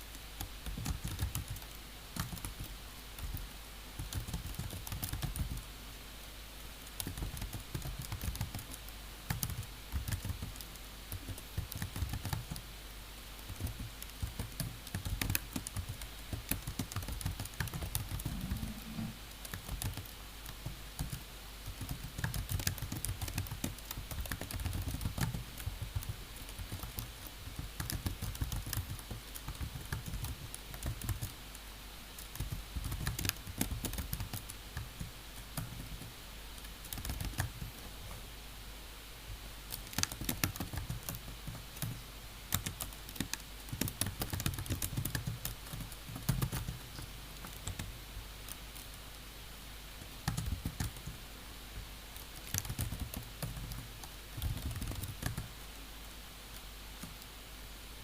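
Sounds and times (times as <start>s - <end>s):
faint low hum: 0.0s - 58.0s
computer keyboard typing: 0.6s - 3.4s, 4.0s - 5.6s, 7.0s - 12.6s, 13.5s - 21.2s, 21.8s - 31.3s, 32.2s - 34.9s, 35.6s - 37.6s, 39.7s - 47.9s, 50.2s - 51.2s, 52.4s - 55.5s.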